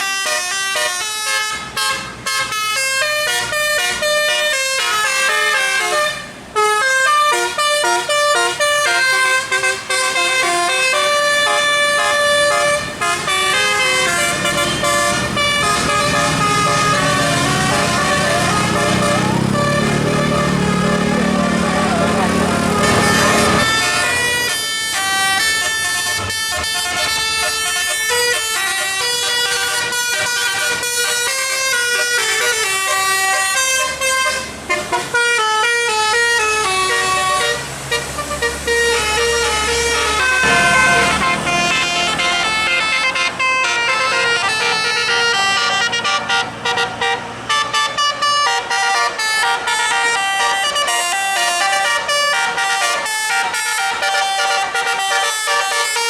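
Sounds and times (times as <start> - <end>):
musical air horn melody: 0.0 - 56.0.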